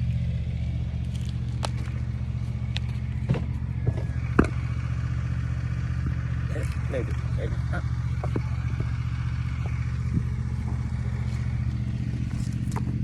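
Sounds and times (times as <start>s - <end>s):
lawnmower engine running: 0.0s - 13.0s
sharp knocks and clanks: 2.8s - 4.8s, 8.1s - 11.2s.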